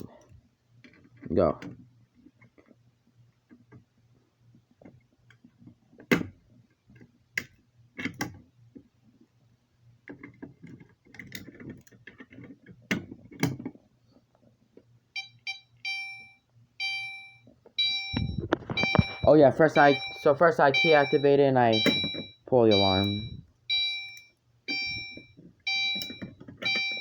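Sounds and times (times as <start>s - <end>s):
faint steady hum: 0.0s - 27.0s
fire alarm horn beeping: 15.2s - 27.0s.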